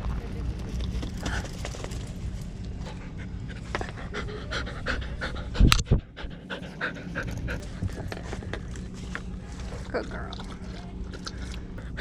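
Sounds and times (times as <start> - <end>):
dog panting: 2.8 - 8.9.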